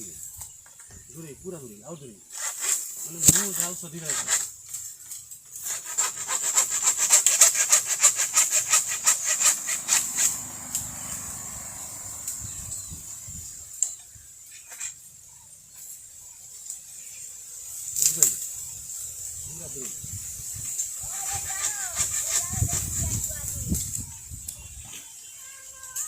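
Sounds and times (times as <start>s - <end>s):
jungle insects buzzing: 0.0s - 26.0s
tool rasping against wood: 2.3s - 4.5s, 5.6s - 11.2s, 21.1s - 23.3s.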